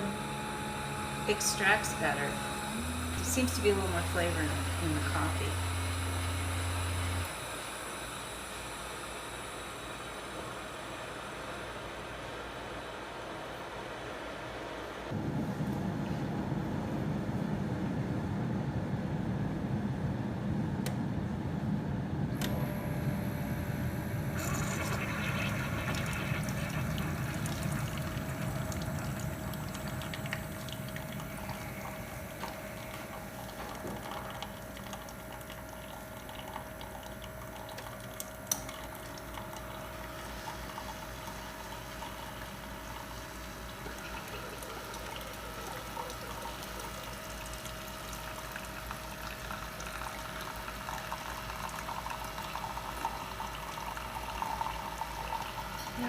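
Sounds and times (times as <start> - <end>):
coffee maker pump hum: 0.0 - 16.4, 22.2 - 56.0
coffee streaming into mug: 24.3 - 55.9.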